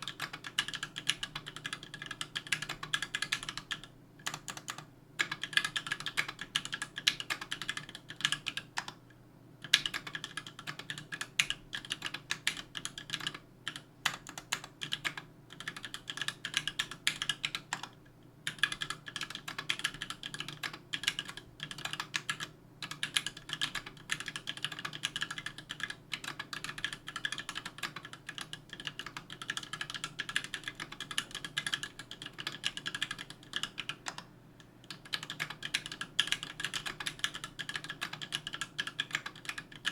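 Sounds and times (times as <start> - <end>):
typing on mechanical keyboard: 0.0 - 9.0, 9.6 - 34.3, 34.9 - 39.9.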